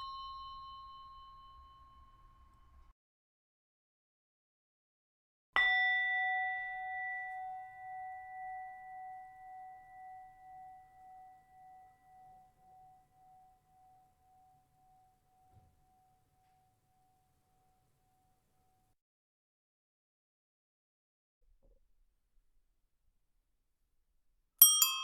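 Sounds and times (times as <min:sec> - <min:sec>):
bell ringing: 0:24.6 - 0:25.0.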